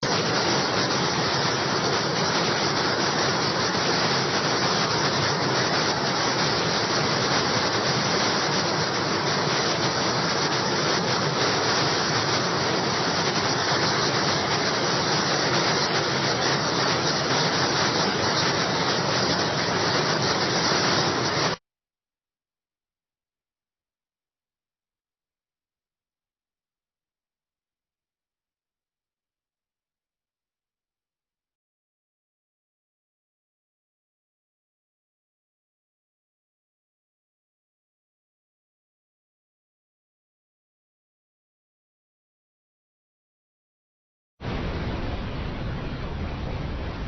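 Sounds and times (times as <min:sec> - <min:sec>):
waterfall roaring: 0:00.0 - 0:21.6, 0:44.4 - 0:47.0.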